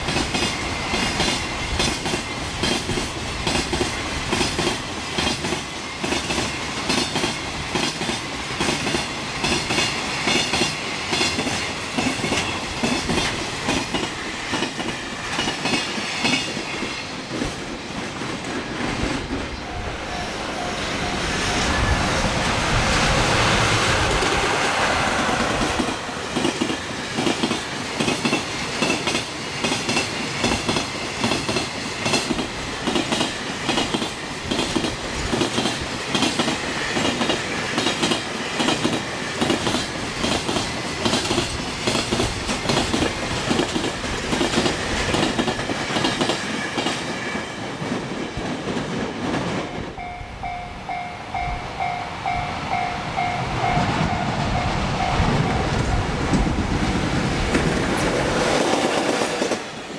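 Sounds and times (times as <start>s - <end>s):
train wheels clacking over joints: 0.0s - 59.9s
level crossing warning bell: 19.4s - 22.6s, 49.6s - 56.6s.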